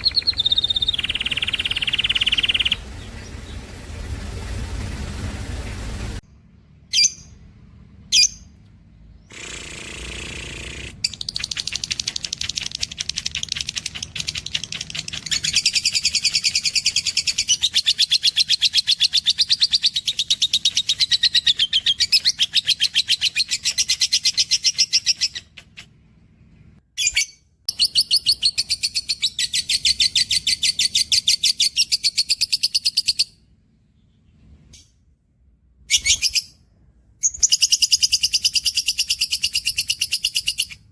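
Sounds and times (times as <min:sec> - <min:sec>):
bird singing fast high trill: 0:00.0 - 0:03.8.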